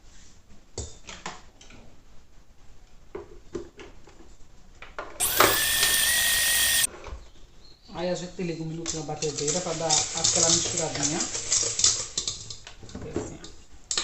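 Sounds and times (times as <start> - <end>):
electric mixer whining: 5.2 - 6.9.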